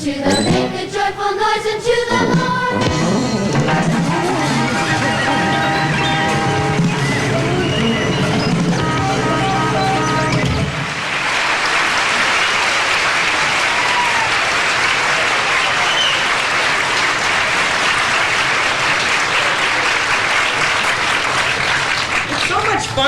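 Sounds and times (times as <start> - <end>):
music: 0.0 - 10.9
audience applauding: 3.5 - 23.0.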